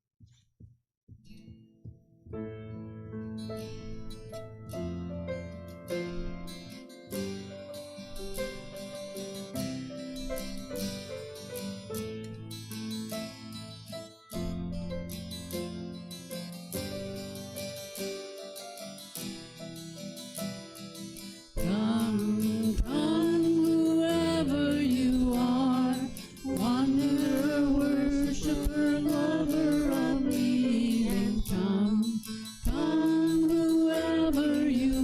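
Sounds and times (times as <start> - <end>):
plucked keyboard or guitar: 1.2 - 35.0
person singing long notes: 21.6 - 35.0.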